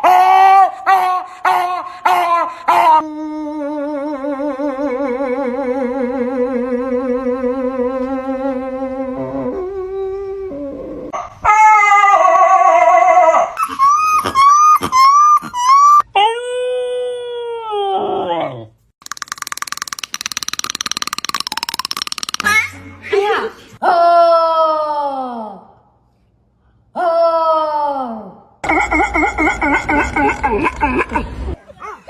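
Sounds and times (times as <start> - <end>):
dog howling: 10.3 - 18.7
dog whining: 11.1 - 17.1
dog yipping: 13.0 - 16.4, 31.7 - 32.0.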